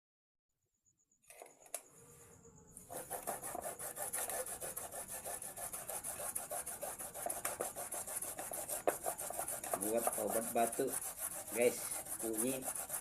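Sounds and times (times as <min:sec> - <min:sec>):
root grated on hand grater: 0:02.9 - 0:13.0.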